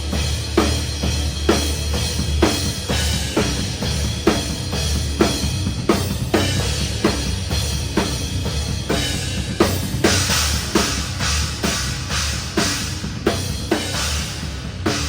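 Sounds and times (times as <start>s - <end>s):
metal band playing live: 0.0s - 15.0s
cymbals: 8.9s - 15.0s.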